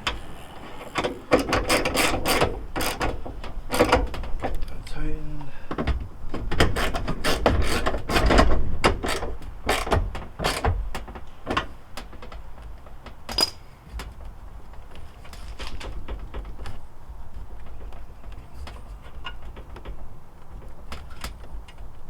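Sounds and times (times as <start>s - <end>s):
headlight mounting creaking and clicking: 0.0s - 4.8s, 5.7s - 12.3s.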